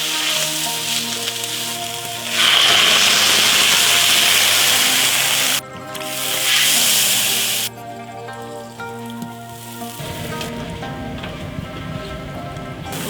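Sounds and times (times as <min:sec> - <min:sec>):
food sizzling in hot oil: 0:00.0 - 0:07.7
background music: 0:00.0 - 0:13.0.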